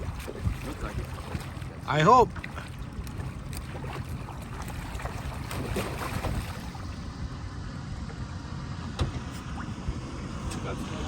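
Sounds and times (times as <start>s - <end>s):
wind on microphone: 0.0s - 1.6s
boat motor rumbling: 0.0s - 11.0s.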